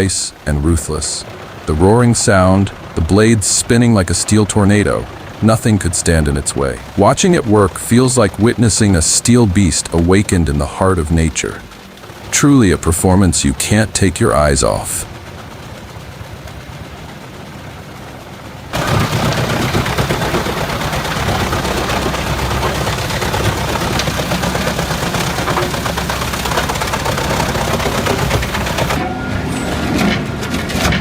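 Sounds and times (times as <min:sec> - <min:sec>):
wood chipper shredding logs: 0:00.0 - 0:31.0
wood crackling and snapping: 0:00.0 - 0:31.0.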